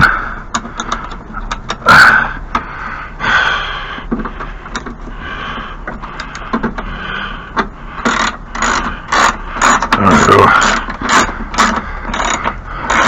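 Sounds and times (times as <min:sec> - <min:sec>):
metal tools clicking and knocking: 0:00.5 - 0:01.8, 0:07.6 - 0:13.0
metal scraping: 0:04.4 - 0:13.0.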